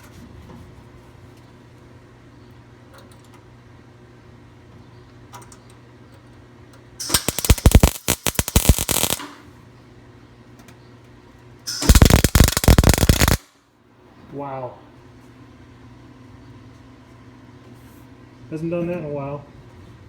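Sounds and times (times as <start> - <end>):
welder arc crackling and popping: 7.0 - 9.4, 11.7 - 13.5.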